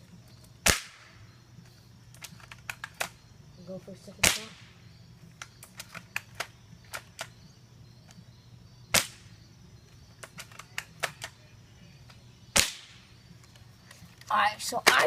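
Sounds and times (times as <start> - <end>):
airsoft rifle firing: 4.2 - 4.7, 12.6 - 13.0.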